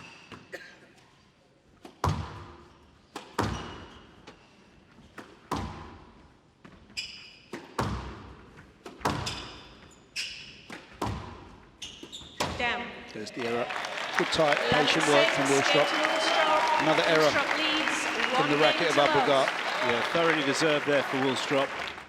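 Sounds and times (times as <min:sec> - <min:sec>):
shoe squeaks: 0:00.0 - 0:00.5, 0:03.4 - 0:04.6, 0:06.8 - 0:07.8, 0:09.0 - 0:11.0, 0:11.7 - 0:12.6
squash ball hitting rackets and walls: 0:01.8 - 0:04.1, 0:05.0 - 0:06.2, 0:07.0 - 0:12.6.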